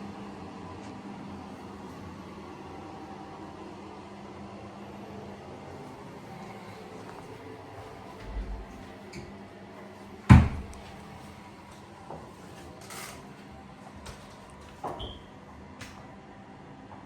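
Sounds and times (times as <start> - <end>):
cupboard door knock: 10.3 - 10.7.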